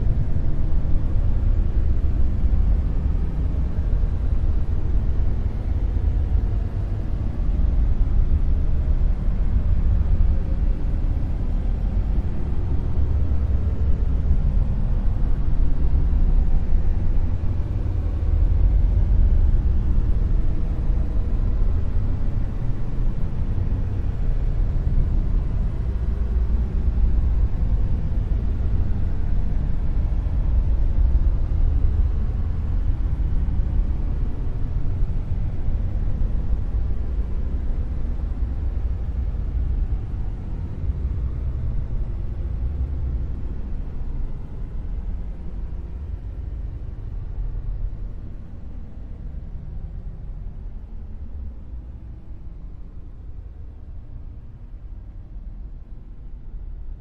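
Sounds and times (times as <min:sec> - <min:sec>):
deep bass-heavy noise: 0:00.0 - 0:52.1.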